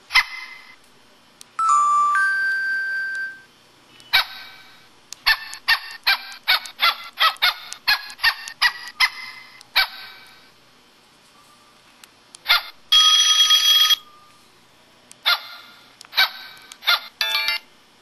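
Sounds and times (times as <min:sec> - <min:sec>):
electronic chime melody: 0:01.6 - 0:03.5
dog bark sound effect: 0:12.4 - 0:12.8, 0:15.2 - 0:17.1.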